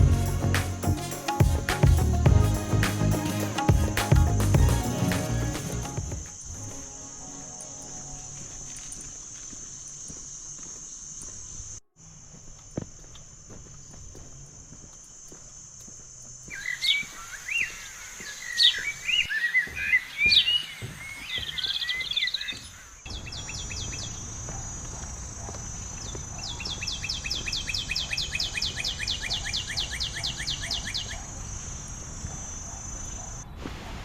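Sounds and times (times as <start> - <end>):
steady high drone: 0.0 - 8.8
birds chirping: 16.4 - 24.7.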